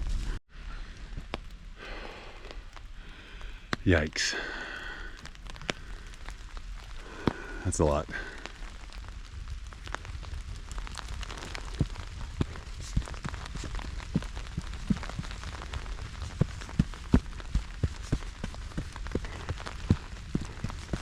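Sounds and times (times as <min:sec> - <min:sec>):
low wind rumble: 0:00.0 - 0:21.0
raindrops tapping on surface: 0:02.2 - 0:21.0.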